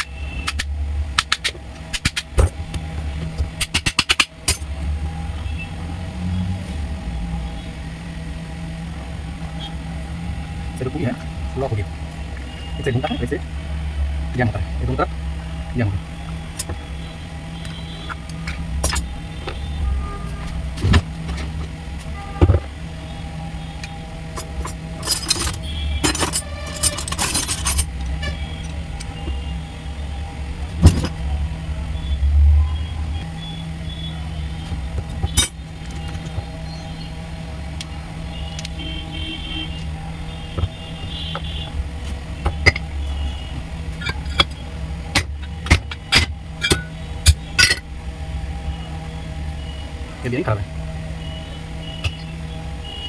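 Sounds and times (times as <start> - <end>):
sharp clicks and knocks: 0.0 - 4.7
steady low hum: 0.0 - 53.0
metal tools knocking and clinking: 18.8 - 19.1, 24.4 - 28.7, 30.8 - 31.2, 35.0 - 36.4, 42.4 - 42.9, 44.0 - 47.8.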